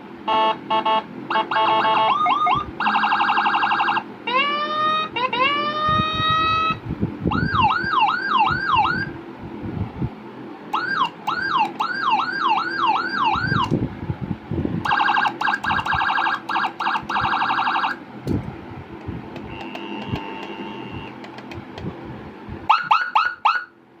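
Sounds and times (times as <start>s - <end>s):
electronic siren tone patterns: 0.3s - 9.2s, 10.7s - 13.7s, 14.8s - 18.0s, 22.7s - 23.7s.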